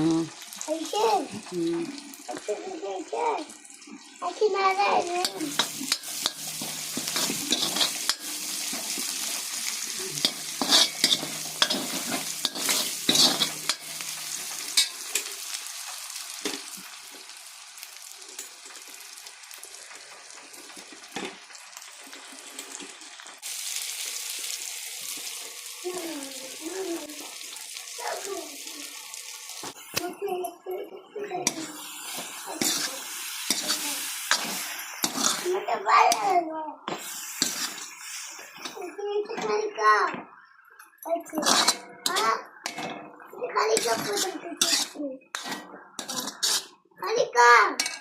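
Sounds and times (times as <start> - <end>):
food sizzling in a pan: 0.0 - 48.0
spoon scraping and stirring: 5.2 - 9.2, 10.2 - 15.4, 32.2 - 35.5, 37.4 - 38.8, 41.4 - 42.3, 43.8 - 46.8.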